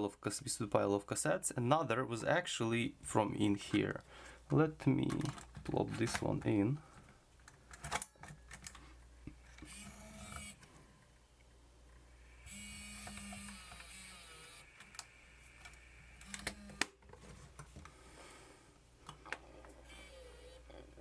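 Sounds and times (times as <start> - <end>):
small motor whirring: 9.6 - 10.6, 12.2 - 16.8, 19.8 - 20.8.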